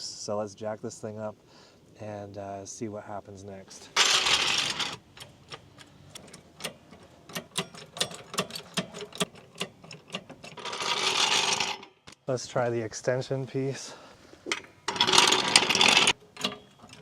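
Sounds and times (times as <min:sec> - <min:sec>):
jack ratchet clicking: 0:04.0 - 0:11.9, 0:14.6 - 0:17.0.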